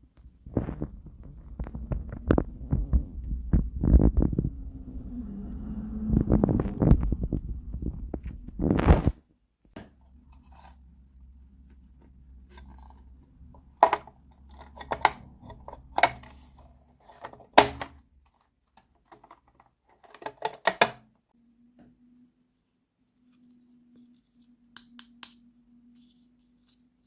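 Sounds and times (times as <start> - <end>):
faint low hum: 0.0 - 9.1.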